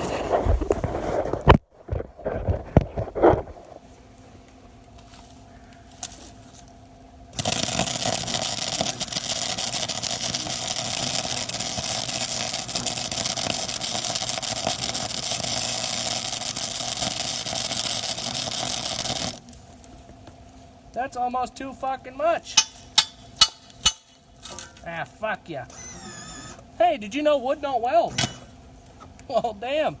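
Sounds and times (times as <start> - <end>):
welder crackling hiss: 7.4 - 19.8, 25.7 - 26.6, 27.9 - 28.6.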